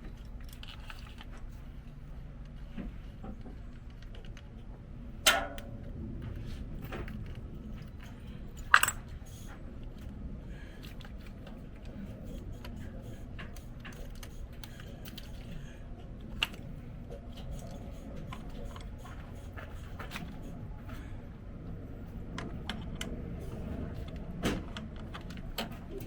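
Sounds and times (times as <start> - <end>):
low background rumble: 0.0 - 26.0.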